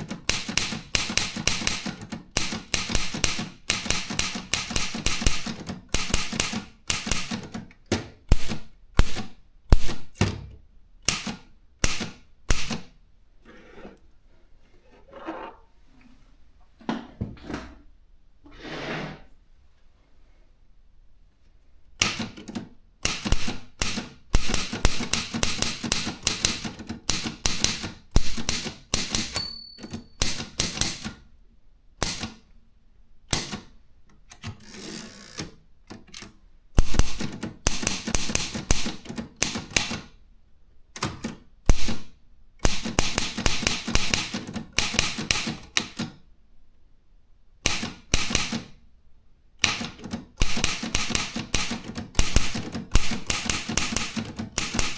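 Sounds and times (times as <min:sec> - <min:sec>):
typewriter key strikes: 0:00.0 - 0:10.4, 0:11.1 - 0:12.9, 0:22.0 - 0:31.2, 0:32.0 - 0:32.4, 0:33.3 - 0:33.7, 0:36.1 - 0:40.1, 0:42.7 - 0:46.1, 0:47.6 - 0:48.7, 0:49.6 - 0:54.9.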